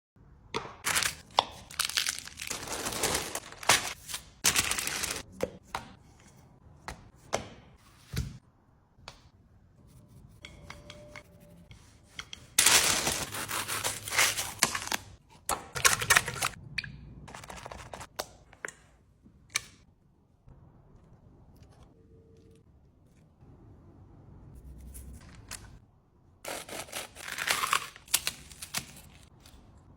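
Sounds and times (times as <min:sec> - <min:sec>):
crisp tearing and crinkling: 0:00.8 - 0:05.2, 0:12.6 - 0:15.2, 0:26.5 - 0:29.5.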